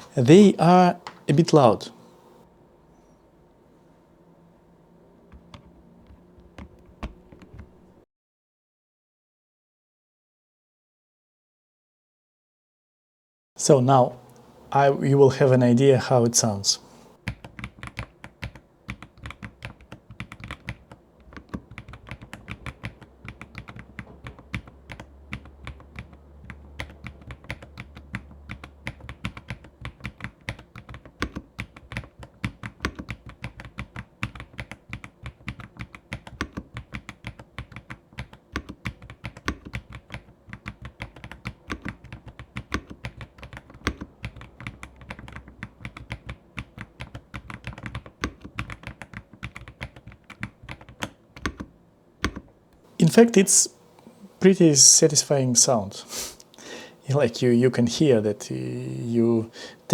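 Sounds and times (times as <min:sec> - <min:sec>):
mechanical keyboard typing: 0:05.3 - 0:07.8, 0:17.2 - 0:52.5.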